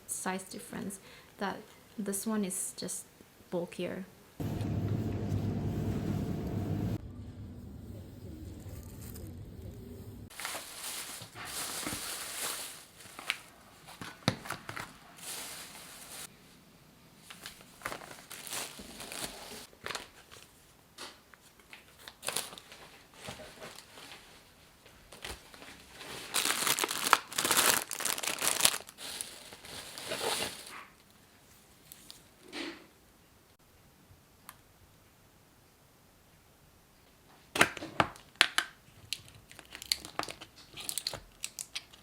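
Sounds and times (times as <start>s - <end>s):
packaging crinkling and rustling: 10.3s - 16.3s, 17.2s - 31.2s, 38.1s - 42.0s.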